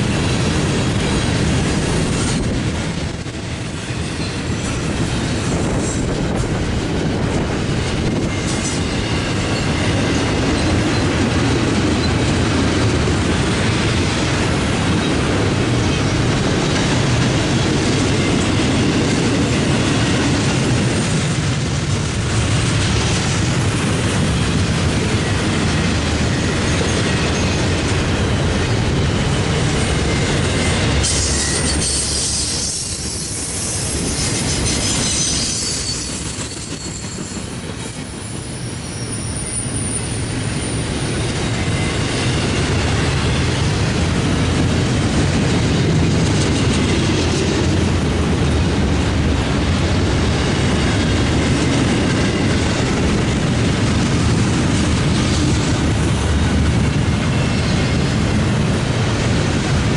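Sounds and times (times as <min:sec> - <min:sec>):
freight train rolling past: 0:00.0 - 0:59.9
high-pitched wheel squeal: 0:30.0 - 0:37.6, 0:38.2 - 0:42.6.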